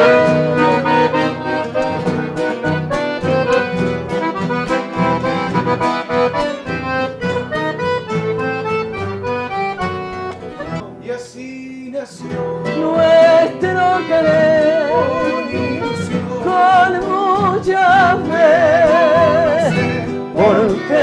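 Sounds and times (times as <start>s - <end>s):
accordion melody: 0.0s - 11.2s, 12.3s - 21.0s
pulsing guitar accompaniment: 0.0s - 11.2s, 12.2s - 21.0s.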